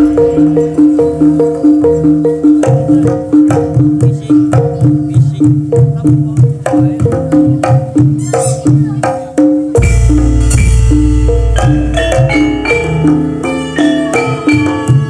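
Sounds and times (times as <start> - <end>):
drum beat: 0.0 - 15.0
gong-chime notes: 9.8 - 15.0.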